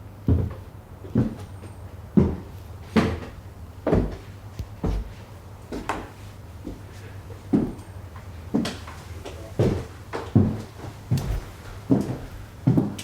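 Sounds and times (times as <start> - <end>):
dull thuds: 11.1 - 12.0.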